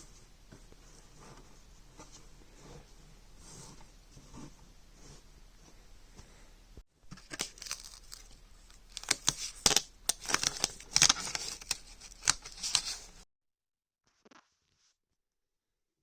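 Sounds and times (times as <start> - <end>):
materials crinkling: 7.1 - 13.2.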